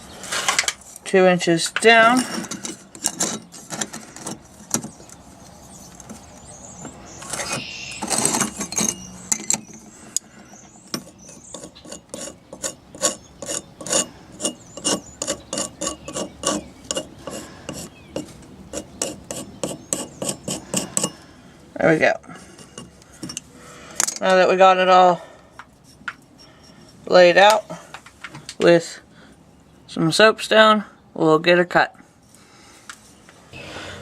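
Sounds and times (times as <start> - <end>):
soapstone scraping on steel: 10.8 - 21.3, 25.7 - 27.0.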